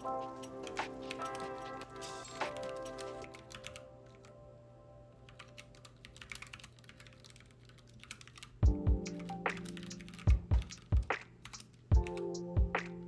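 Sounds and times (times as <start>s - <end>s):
keyboard typing: 0.0s - 4.4s, 5.2s - 13.0s
soft music with bass beat: 8.6s - 11.2s, 11.9s - 13.0s.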